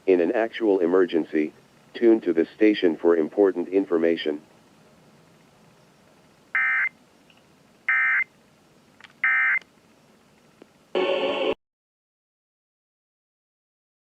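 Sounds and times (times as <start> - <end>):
louder fuller sound: 11.0 - 11.6.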